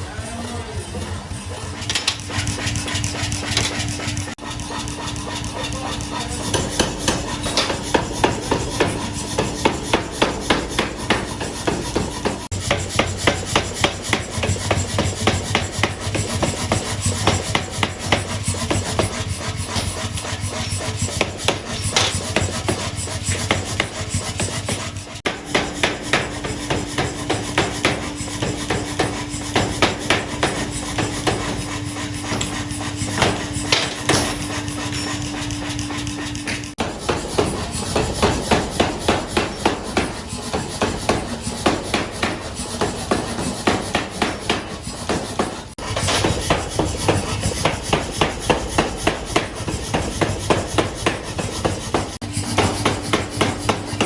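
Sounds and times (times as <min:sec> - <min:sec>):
hammer striking metal: 0:01.6 - 0:54.0.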